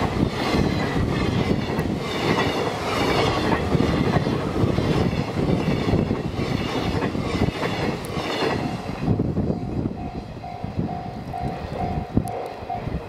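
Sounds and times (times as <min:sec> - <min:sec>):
freight train wheels clattering: 0:00.0 - 0:13.0.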